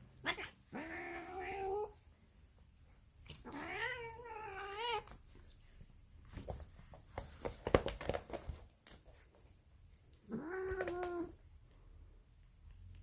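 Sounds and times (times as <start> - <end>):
cat meowing: 0.2 - 1.9, 3.4 - 5.1, 10.3 - 11.3.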